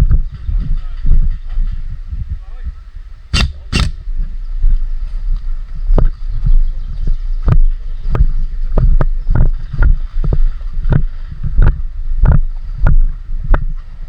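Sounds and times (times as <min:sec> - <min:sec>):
wind rumble: 0:00.0 - 0:14.0
microphone handling noise: 0:03.3 - 0:04.4
sharp clicks and knocks: 0:03.4 - 0:04.0.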